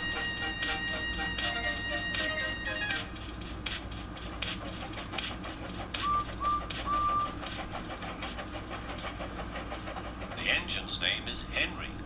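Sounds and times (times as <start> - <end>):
steam locomotive chuffing: 0.0 - 12.0
locomotive whistle toots: 6.0 - 7.4.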